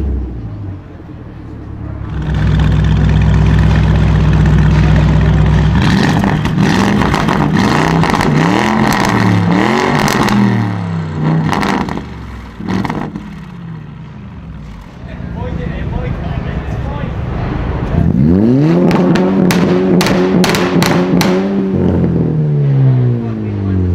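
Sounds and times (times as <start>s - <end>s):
car engine revving: 0.0s - 23.9s
exhaust pops: 18.8s - 21.6s.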